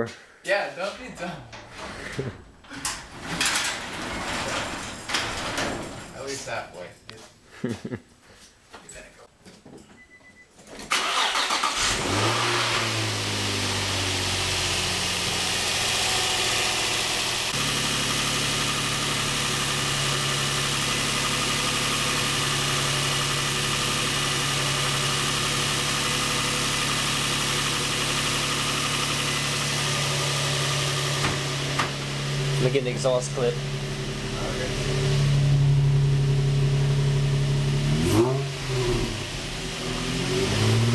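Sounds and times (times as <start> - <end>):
car engine starting and revving: 10.9 - 40.9.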